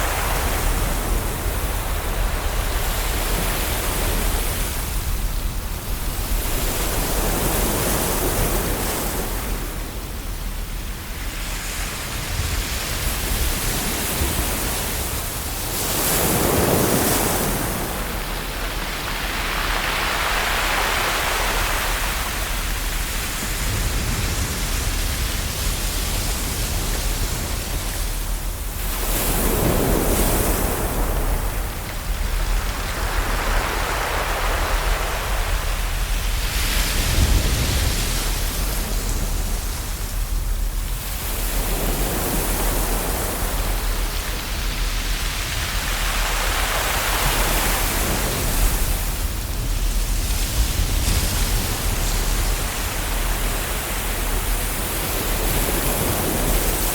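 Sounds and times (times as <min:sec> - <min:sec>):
ocean waves washing onto shore: 0:00.0 - 0:56.9.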